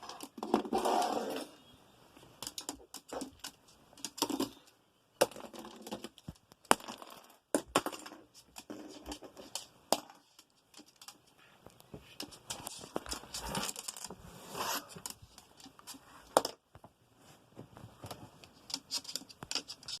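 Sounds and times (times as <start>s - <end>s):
scraping and crinkling: 8.0s - 16.6s, 17.2s - 20.0s.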